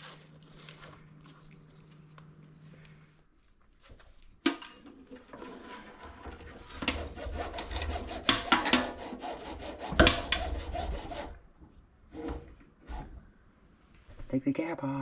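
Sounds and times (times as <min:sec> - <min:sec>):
scraping and rubbing: 0:05.0 - 0:11.4, 0:12.1 - 0:13.3.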